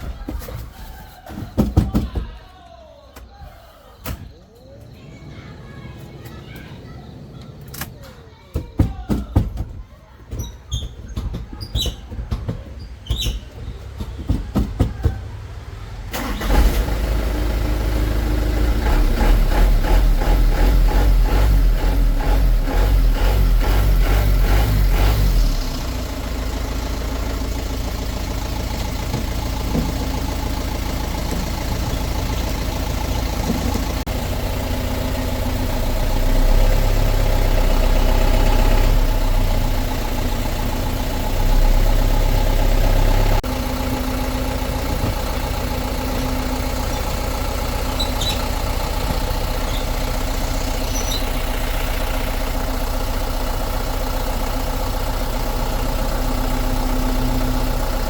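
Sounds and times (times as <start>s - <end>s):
diesel truck engine idling: 12.9s - 58.0s.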